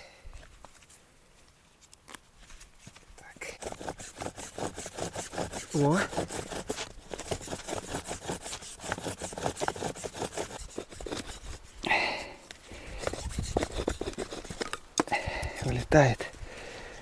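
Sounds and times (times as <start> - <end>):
wood rubbing on wood: 3.3 - 16.3.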